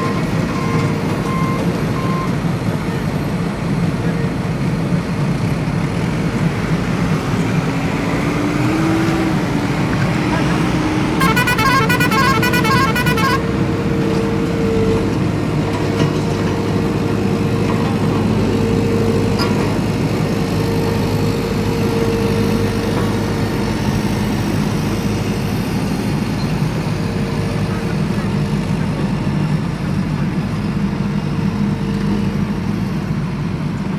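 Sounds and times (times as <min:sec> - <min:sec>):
toy warbling electronic horn: 0:11.2 - 0:13.5.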